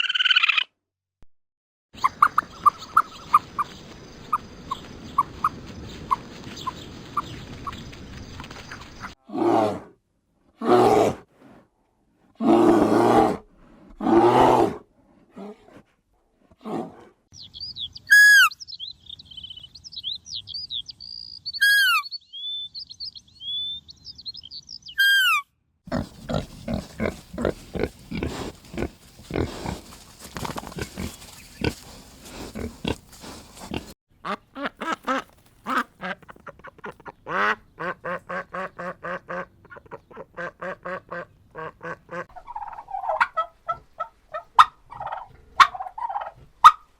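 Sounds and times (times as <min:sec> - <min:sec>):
high sweeping bird chirps: 0:17.4 - 0:25.4.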